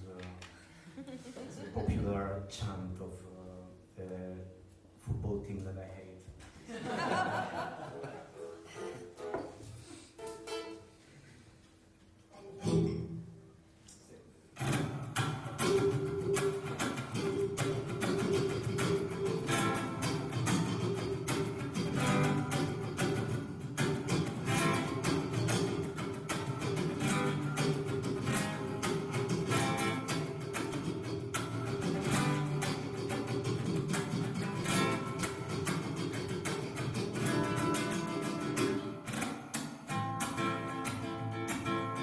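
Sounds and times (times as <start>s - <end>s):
strummed acoustic guitar: 12.3s - 13.6s, 14.6s - 42.0s.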